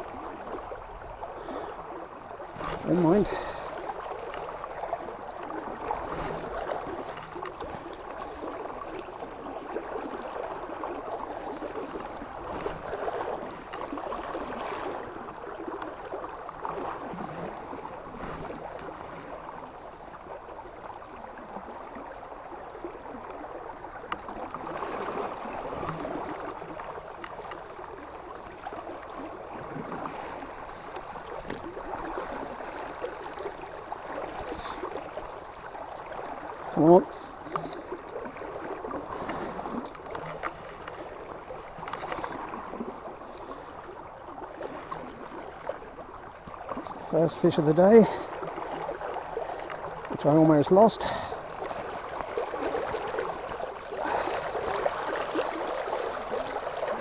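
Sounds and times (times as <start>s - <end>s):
fast river current rushing: 0.0s - 57.0s.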